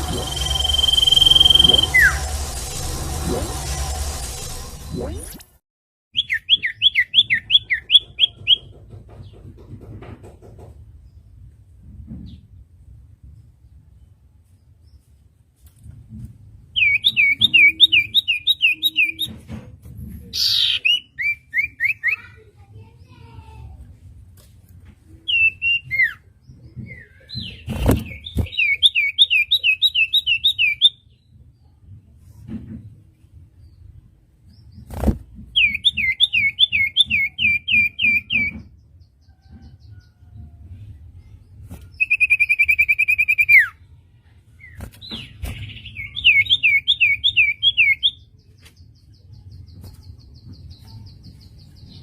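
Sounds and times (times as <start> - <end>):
bird whistling: 0.0 - 2.3, 42.0 - 43.7
harsh rasping bird note: 0.0 - 5.3.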